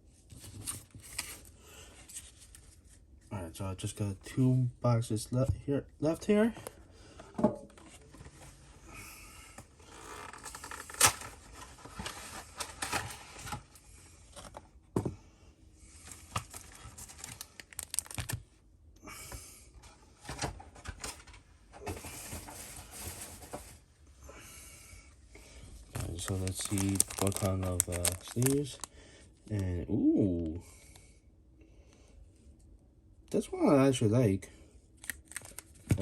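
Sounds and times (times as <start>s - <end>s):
packaging tearing and crinkling: 16.4s - 18.4s, 26.0s - 28.9s, 35.0s - 36.0s.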